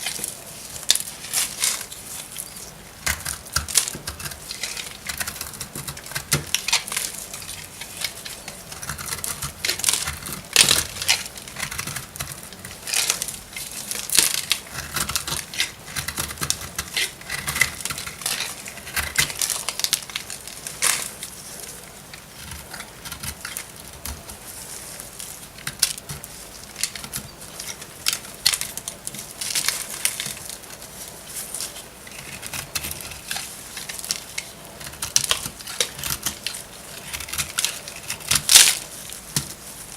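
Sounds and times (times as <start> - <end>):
blade cutting dry soap: 3.0 - 30.6, 32.1 - 39.6.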